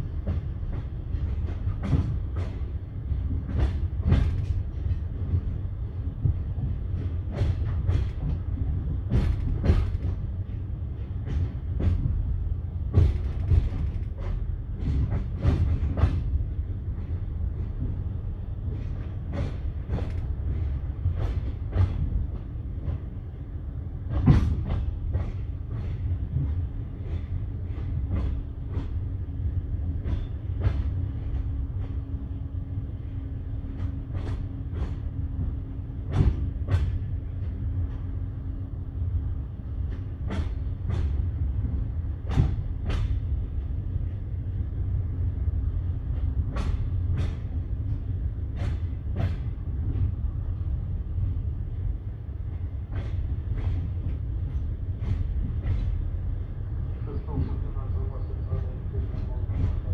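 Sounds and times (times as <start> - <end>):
train wheels knocking over rail joints: 9.1 - 10.3, 12.9 - 16.4.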